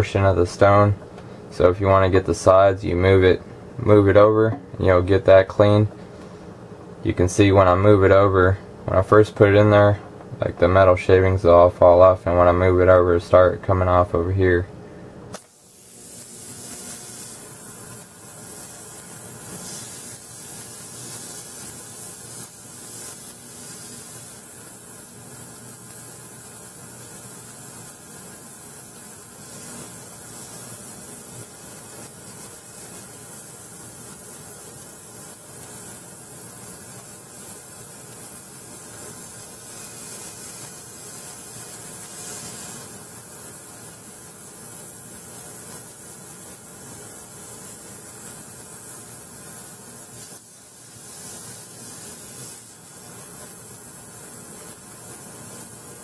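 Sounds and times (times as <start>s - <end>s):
ultrasonic cleaner hissing: 15.3s - 56.0s.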